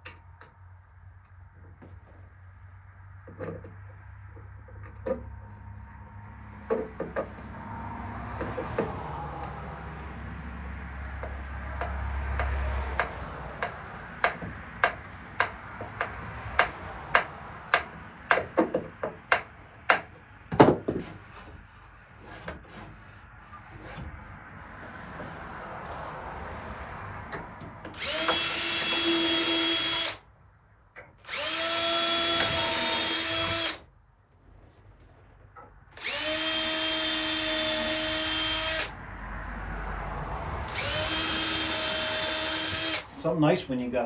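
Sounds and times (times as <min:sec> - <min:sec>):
knocks and taps on hardware: 0:11.2 - 0:21.1.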